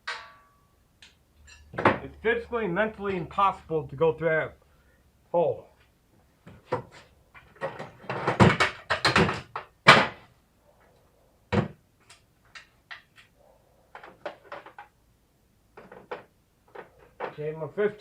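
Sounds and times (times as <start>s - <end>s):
metal tools clanking: 1.4s - 2.1s.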